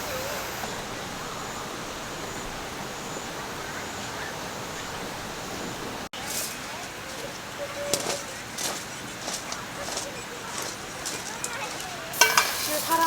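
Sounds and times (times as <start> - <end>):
stream rushing: 0.0 - 6.1.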